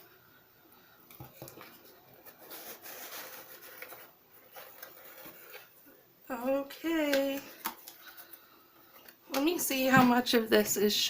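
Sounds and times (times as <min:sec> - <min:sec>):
cardboard and paper rustling: 0:01.2 - 0:05.8.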